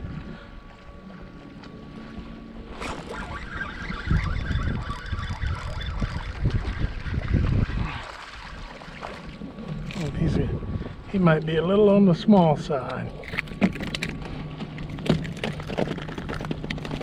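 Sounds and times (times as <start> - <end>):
wind buffeting microphone: 0.0 - 1.4, 2.1 - 17.0
water splashing: 1.5 - 10.3.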